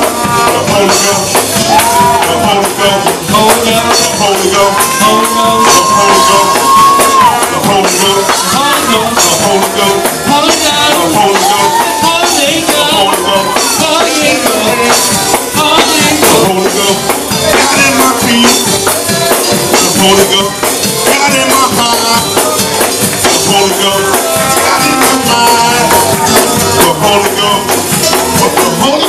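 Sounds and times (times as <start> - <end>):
fast drums: 0.0 - 29.0
voices singing and shouting: 0.0 - 29.0.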